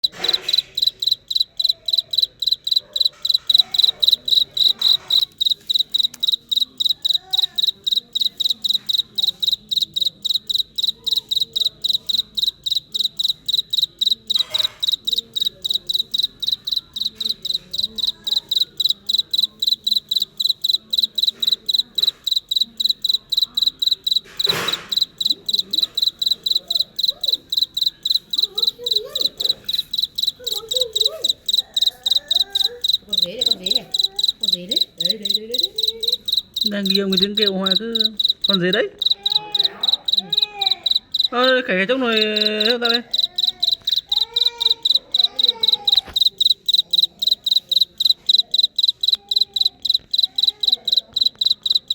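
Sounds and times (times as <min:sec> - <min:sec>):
cricket chirping: 0:00.0 - 0:51.9.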